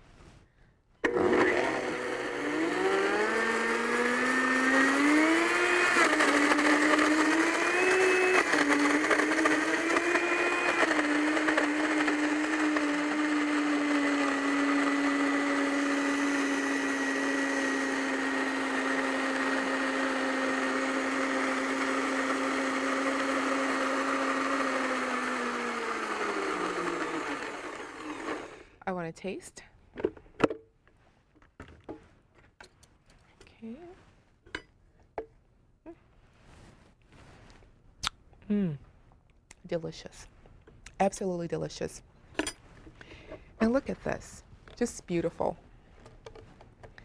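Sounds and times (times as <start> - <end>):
blender motor whining: 1.0 - 28.7.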